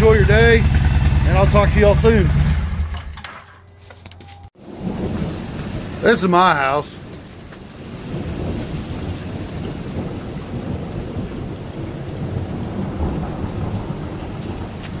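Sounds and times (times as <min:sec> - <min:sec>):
low rumble of thunder: 0:04.6 - 0:15.0
steady rain falling: 0:04.6 - 0:15.0.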